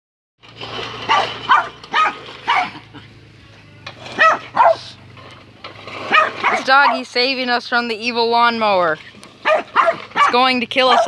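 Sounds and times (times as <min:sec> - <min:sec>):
lawnmower humming: 0:00.4 - 0:11.0
dog barking: 0:01.1 - 0:02.8, 0:04.2 - 0:04.9, 0:06.1 - 0:07.0, 0:09.4 - 0:11.0.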